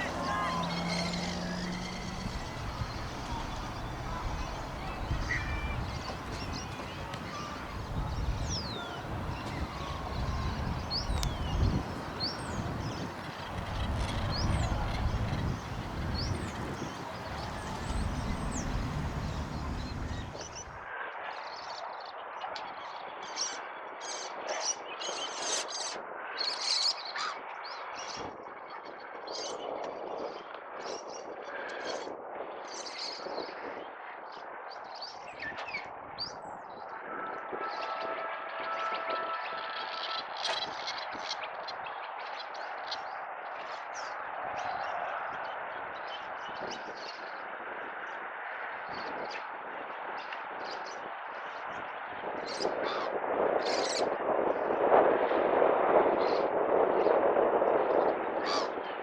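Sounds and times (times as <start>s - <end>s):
birds chirping: 0.0s - 20.8s
faint outdoor murmur: 0.0s - 20.8s
wind buffeting microphone: 0.0s - 20.8s.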